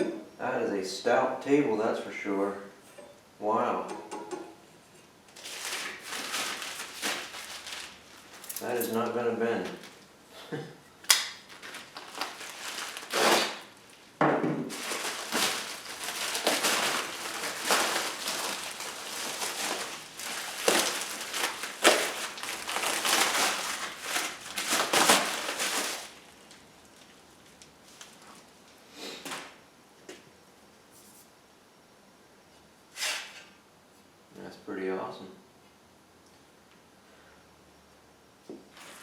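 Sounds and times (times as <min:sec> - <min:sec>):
packaging crinkling and rustling: 0:05.3 - 0:10.1, 0:11.0 - 0:28.7
packaging knocks: 0:11.2 - 0:13.8, 0:14.6 - 0:26.2.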